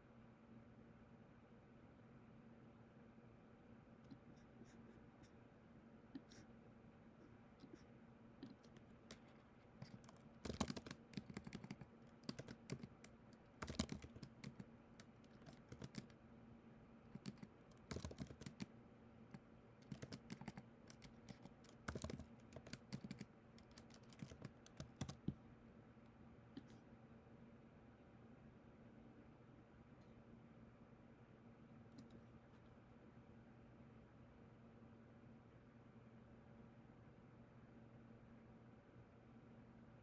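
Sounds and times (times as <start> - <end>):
steady low hum: 0.0 - 40.0
computer keyboard typing: 8.4 - 16.2, 17.1 - 18.7, 19.8 - 25.4.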